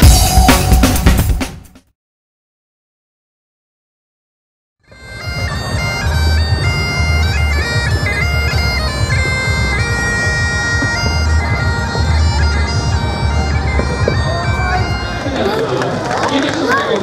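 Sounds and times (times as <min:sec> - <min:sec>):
bagpipes playing a melody: 0:04.8 - 0:16.8
bagpipe drone: 0:04.8 - 0:16.9.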